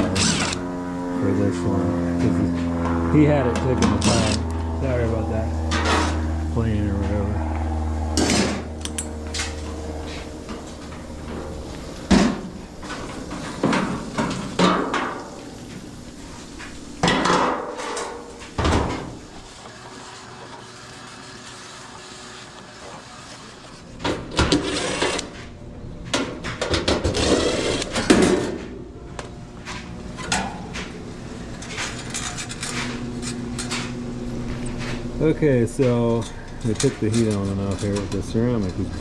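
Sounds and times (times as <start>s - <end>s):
metal scraping: 2.4s - 25.6s, 27.0s - 28.8s, 29.6s - 35.1s.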